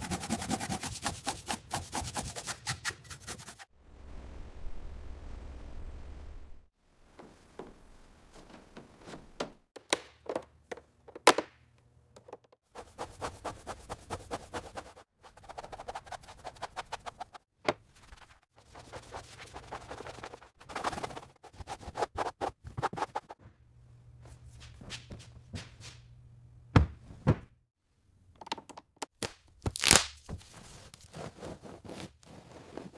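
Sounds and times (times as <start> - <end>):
scraping and scratching: 0.0 - 3.7, 12.8 - 17.4, 18.0 - 23.4, 29.7 - 32.9
sharp crack: 29.2 - 30.3.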